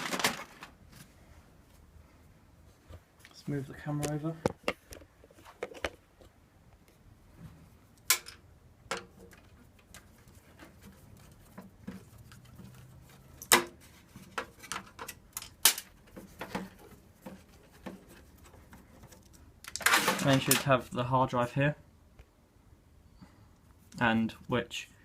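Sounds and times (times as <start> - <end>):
handling clicks and knocks: 8.0 - 20.8.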